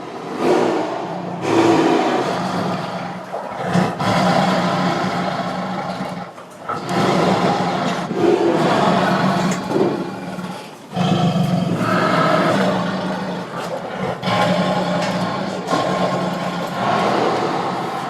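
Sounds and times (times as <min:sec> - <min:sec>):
tiger roaring: 0:00.0 - 0:18.0.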